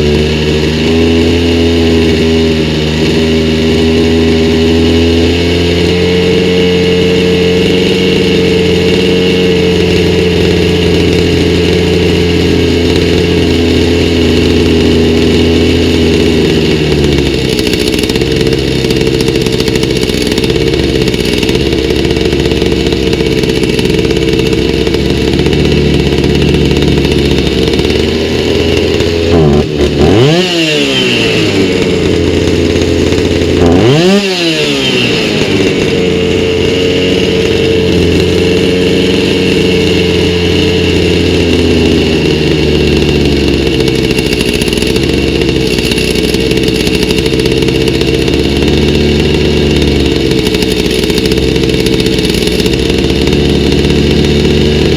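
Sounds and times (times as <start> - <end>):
chainsaw engine idling: 0.0 - 54.9
chainsaw throttle revving: 0.0 - 54.9.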